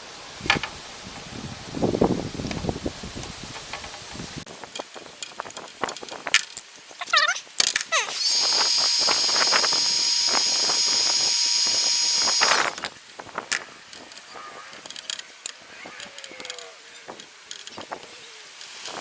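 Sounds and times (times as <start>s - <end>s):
tools clicking and squeaking: 4.7s - 19.0s
small power tool cutting: 7.9s - 12.9s.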